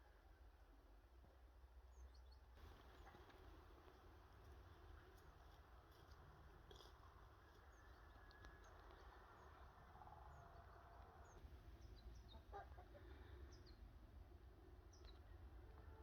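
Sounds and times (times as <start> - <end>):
small birds chirping: 1.9 - 14.0, 14.8 - 15.9
distant chickens clucking: 12.0 - 13.8.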